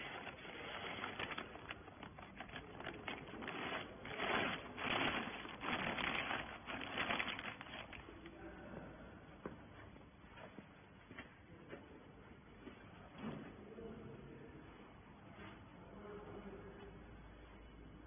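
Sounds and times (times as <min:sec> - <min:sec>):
rustling: 0:00.0 - 0:08.3.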